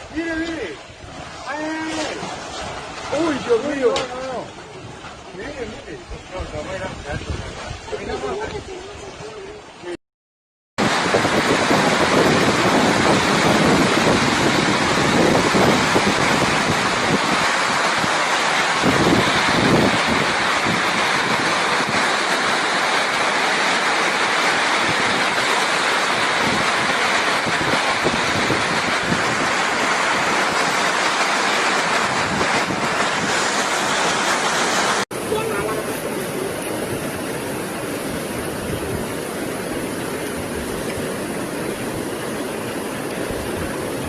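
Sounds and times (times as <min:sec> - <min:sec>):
floodwater rushing roar: 0:00.0 - 0:10.0, 0:10.8 - 0:44.0.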